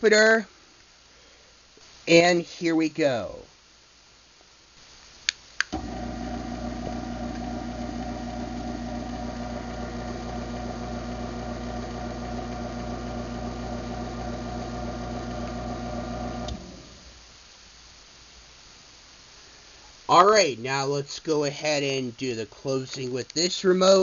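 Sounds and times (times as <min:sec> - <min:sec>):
garage door opener motor running: 0:05.7 - 0:17.0.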